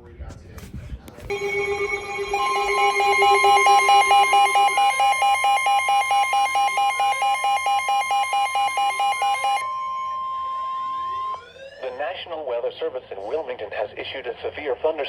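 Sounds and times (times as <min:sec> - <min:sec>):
rapid electronic beeping: 0:01.3 - 0:12.0
steady alarm tone: 0:01.3 - 0:12.2.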